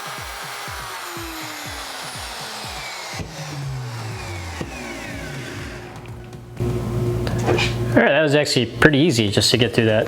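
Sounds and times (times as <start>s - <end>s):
spiral saw cutting plastic: 0.0s - 6.4s.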